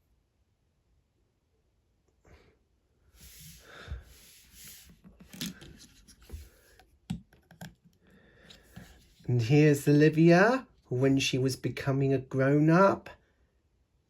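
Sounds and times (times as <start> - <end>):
hands rustling plastic toy bricks: 4.8 - 7.9.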